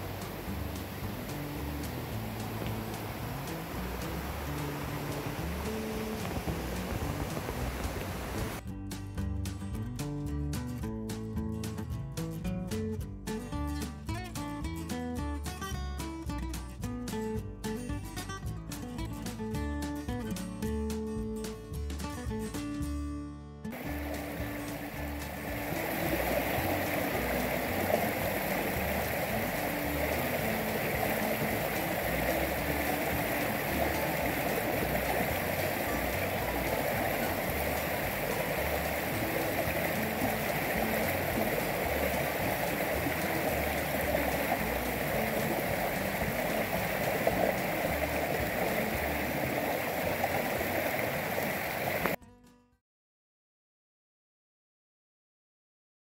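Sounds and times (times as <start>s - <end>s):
water rushing over rocks: 0.0s - 8.6s, 23.7s - 52.2s.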